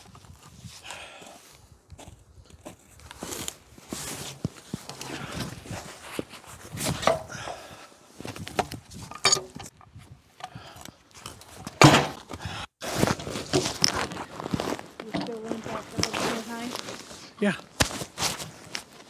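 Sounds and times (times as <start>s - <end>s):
log knocking and scraping: 6.7s - 7.6s, 8.2s - 10.0s, 11.2s - 19.0s
footsteps: 12.9s - 19.0s.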